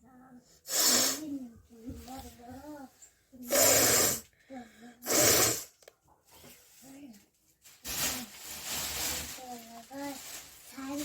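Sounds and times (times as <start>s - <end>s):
air blasts through nose: 0.7s - 1.3s, 3.4s - 4.2s, 5.0s - 5.7s.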